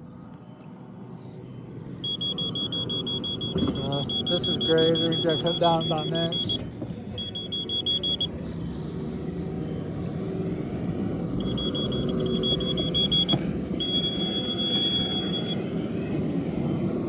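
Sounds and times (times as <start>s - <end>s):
excavator engine running: 1.6s - 17.0s
short rapid beeps: 2.0s - 6.6s, 7.2s - 8.3s, 11.4s - 15.6s.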